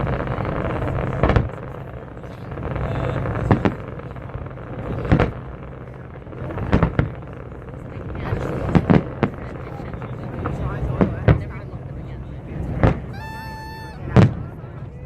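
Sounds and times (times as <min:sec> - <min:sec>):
steady background noise: 0:00.0 - 0:15.0
fireworks bangs: 0:12.6 - 0:14.5.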